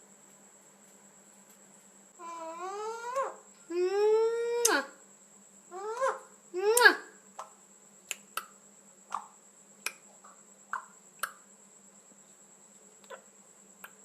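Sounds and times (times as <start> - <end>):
parrot chirp: 2.2 - 3.4.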